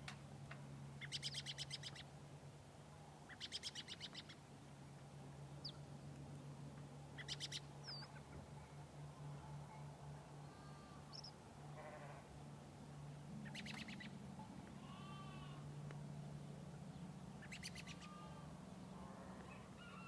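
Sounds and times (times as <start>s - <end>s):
faint low hum: 0.0s - 20.0s
birds chirping: 7.2s - 9.3s, 10.4s - 11.4s, 13.4s - 14.2s, 16.9s - 20.0s
sheep bleating: 11.8s - 12.2s, 14.8s - 15.6s, 18.0s - 19.4s.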